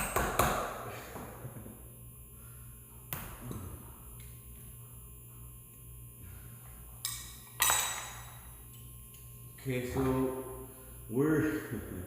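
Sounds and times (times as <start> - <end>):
hammer striking chisel: 0.0 - 0.8.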